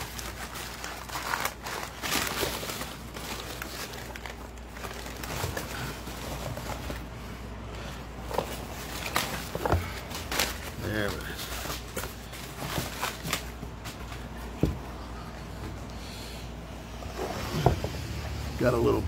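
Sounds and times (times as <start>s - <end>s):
packing material crinkling: 0.0s - 7.4s, 8.2s - 14.6s.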